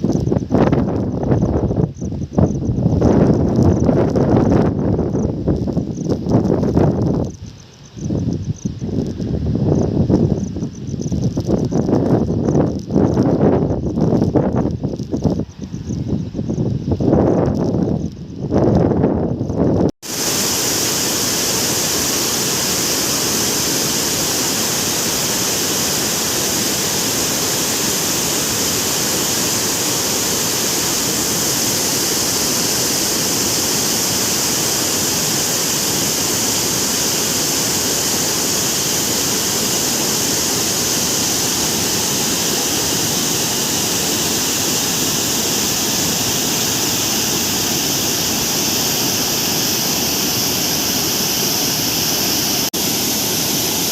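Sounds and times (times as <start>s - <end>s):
heavy rain falling: 20.0s - 53.9s.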